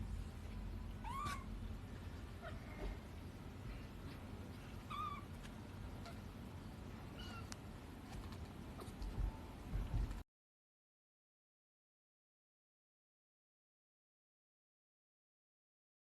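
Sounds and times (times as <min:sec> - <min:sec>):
low steady hum: 0:00.0 - 0:10.2
cat meowing: 0:01.0 - 0:01.5, 0:04.9 - 0:05.3.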